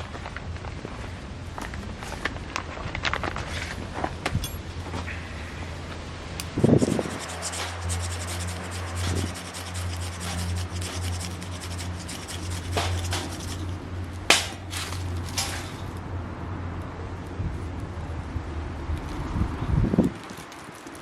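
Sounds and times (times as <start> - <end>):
steady low hum: 0.0 - 18.9
wood scraping and rubbing: 6.4 - 16.0.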